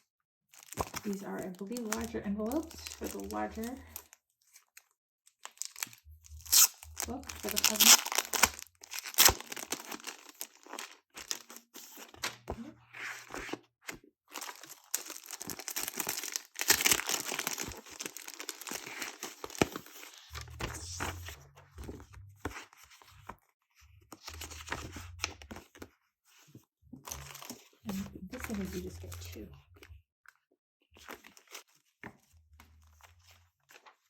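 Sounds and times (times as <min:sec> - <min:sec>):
plastic packaging crinkling and tearing: 0:00.5 - 0:12.5, 0:14.3 - 0:22.2, 0:27.0 - 0:29.3.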